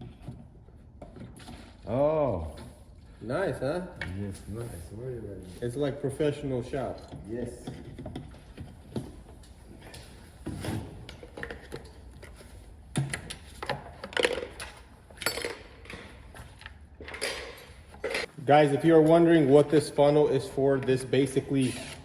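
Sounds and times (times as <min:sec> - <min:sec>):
tools clanking and clicking: 0:06.8 - 0:18.3.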